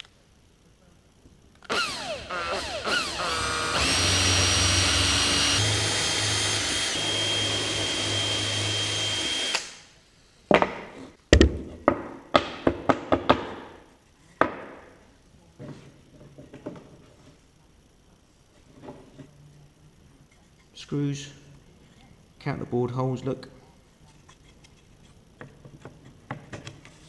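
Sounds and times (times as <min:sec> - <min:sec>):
power drill whining: 0:01.6 - 0:09.8.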